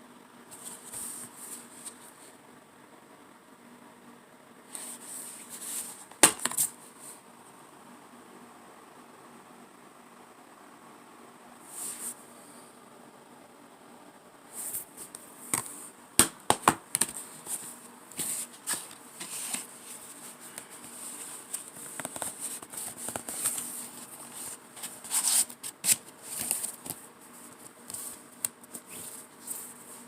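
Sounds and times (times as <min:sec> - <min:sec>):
plastic case rustling: 0:17.0 - 0:27.0.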